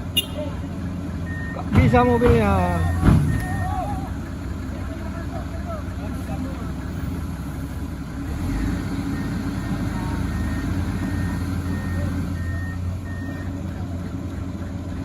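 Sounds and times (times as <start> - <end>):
heavy diesel engine running: 0.0 - 15.0
reversing alarm beeping: 1.2 - 3.9, 9.1 - 13.5.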